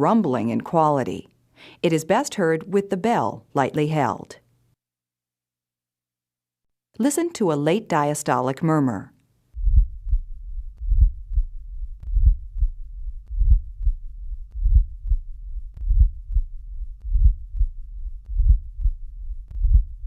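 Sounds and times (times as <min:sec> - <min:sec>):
heartbeat: 0:09.6 - 0:20.0.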